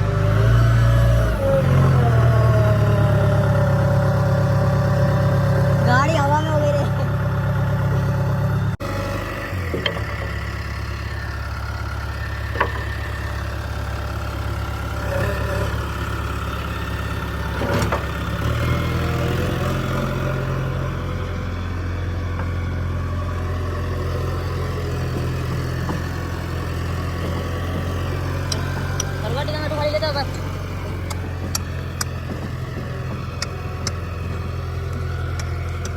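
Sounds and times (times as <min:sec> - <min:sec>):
diesel engine running: 0:00.0 - 0:35.9.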